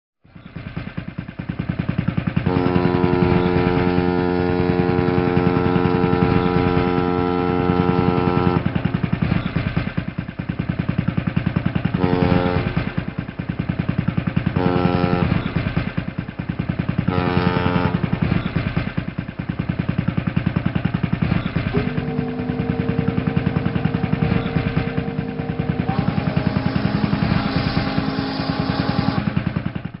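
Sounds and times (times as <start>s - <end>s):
ship engine pulsing: 0.3s - 30.0s
ship horn blasts: 2.4s - 9.2s, 11.9s - 13.3s, 14.5s - 15.6s, 17.0s - 18.4s, 21.7s - 29.7s.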